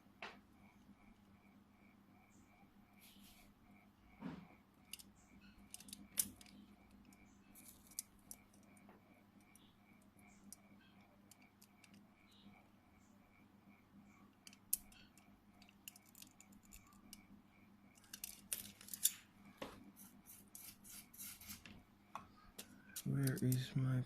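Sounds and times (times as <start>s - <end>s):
faint steady ticking: 3.6s - 20.8s
tools and wires clicking and scraping: 4.8s - 8.7s, 14.4s - 17.2s, 17.9s - 19.3s, 20.0s - 21.7s, 22.6s - 23.8s.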